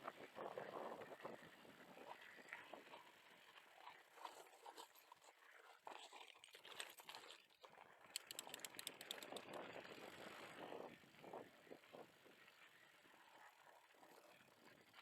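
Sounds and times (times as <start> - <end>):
bicycle rolling over rough ground: 0.0 - 15.0
freewheel hub clicks: 8.1 - 9.6.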